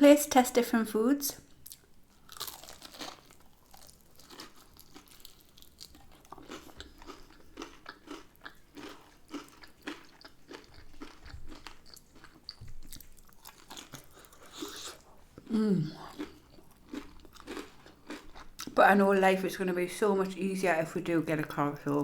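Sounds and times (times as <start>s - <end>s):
person chewing crispy food: 1.5s - 18.8s.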